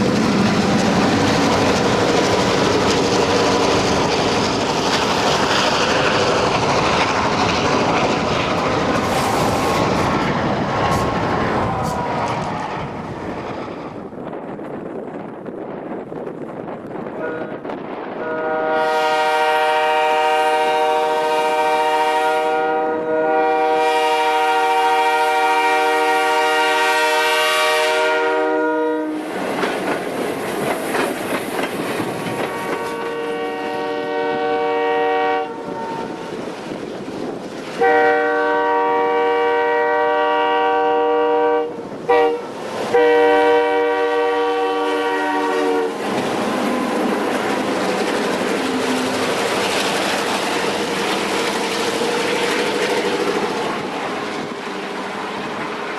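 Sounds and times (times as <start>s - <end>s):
train wheels clicking over rails: 0.0s - 18.4s, 29.1s - 34.2s, 44.7s - 55.9s
locomotive air horn blasts: 17.2s - 29.2s, 32.5s - 36.3s, 37.8s - 46.0s.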